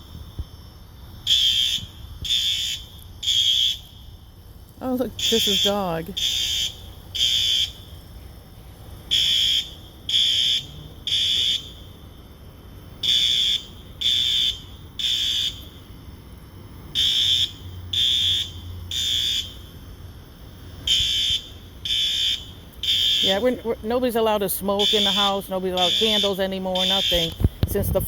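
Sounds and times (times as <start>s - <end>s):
fire alarm beeping: 1.2s - 4.0s, 4.9s - 7.8s, 9.1s - 11.9s, 13.0s - 15.8s, 17.0s - 19.6s, 20.9s - 28.0s.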